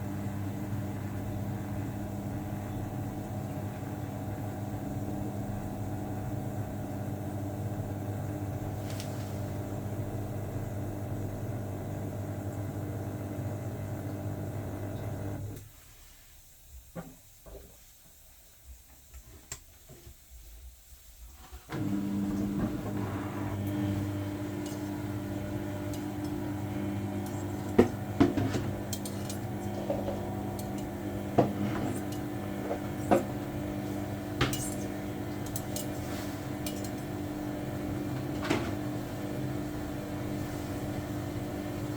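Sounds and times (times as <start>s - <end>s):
washing machine running: 0.0s - 15.6s, 21.7s - 41.9s.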